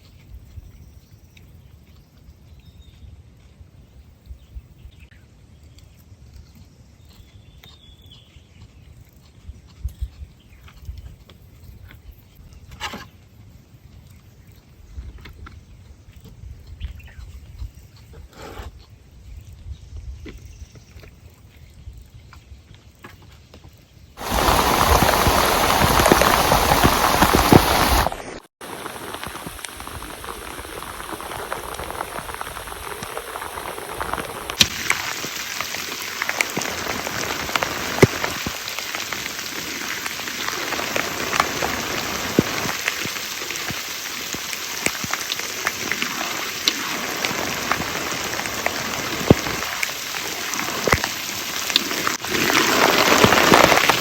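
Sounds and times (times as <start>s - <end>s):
heavy rain falling: 24.2s - 54.0s
raindrops ticking on a surface: 24.2s - 54.0s.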